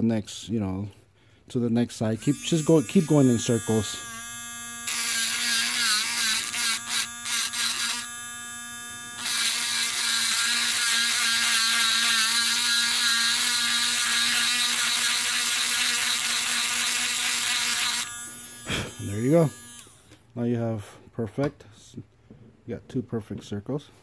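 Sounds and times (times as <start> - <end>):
rotary grinder grinding metal: 2.2 - 20.0.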